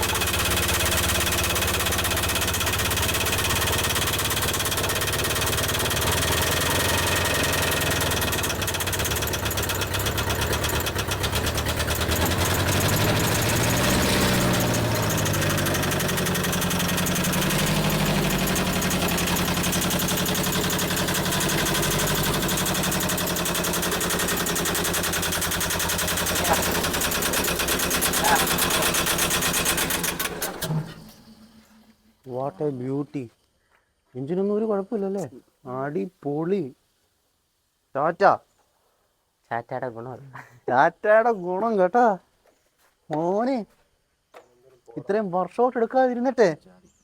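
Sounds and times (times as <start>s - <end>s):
diesel engine revving: 0.0s - 32.1s.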